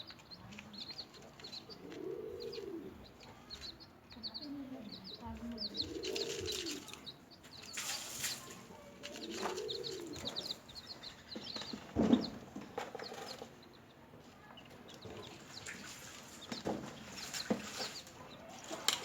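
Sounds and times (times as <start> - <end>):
chicks peeping: 0.0 - 19.0
rustle: 5.6 - 10.7, 15.4 - 19.0.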